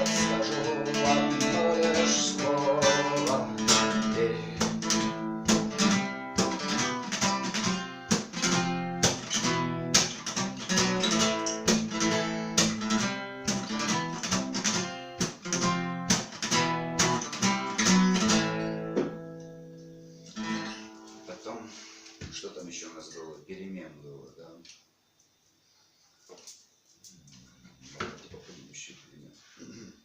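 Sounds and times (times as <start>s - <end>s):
acoustic guitar strumming: 0.0s - 22.1s.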